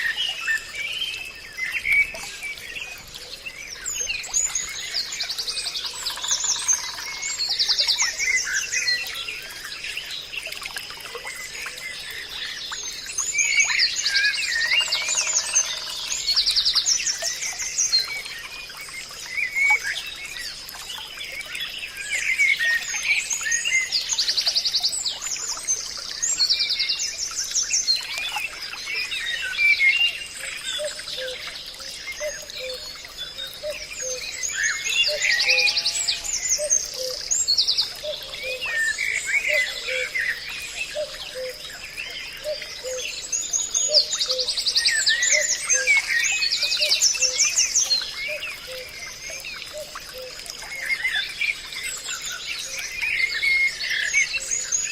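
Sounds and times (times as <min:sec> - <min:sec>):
birds chirping and trilling: 0:27.9 - 0:54.9.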